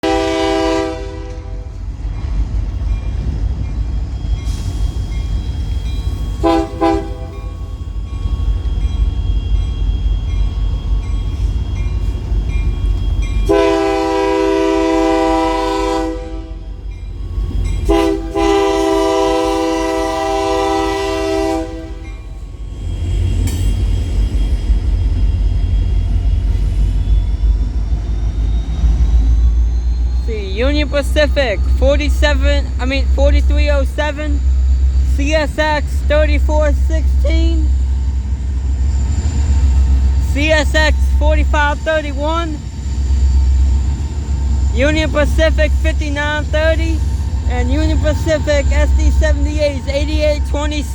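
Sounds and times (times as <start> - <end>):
locomotive air horn blasts: 0.0 - 1.8, 6.4 - 7.5, 13.0 - 16.7, 17.9 - 22.2
freight train rumbling past: 0.0 - 50.9.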